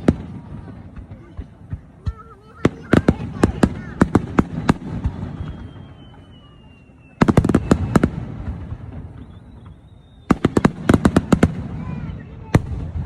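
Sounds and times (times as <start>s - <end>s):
fireworks bangs and crackles: 0.0s - 13.0s
faint falling whistle: 5.2s - 8.1s, 9.0s - 10.6s.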